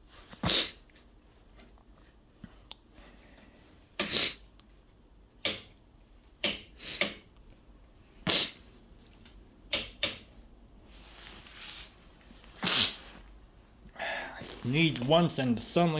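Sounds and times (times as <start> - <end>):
person sniffing: 0.3 - 0.8, 4.0 - 4.5, 8.2 - 8.7, 12.6 - 13.2, 13.9 - 14.7.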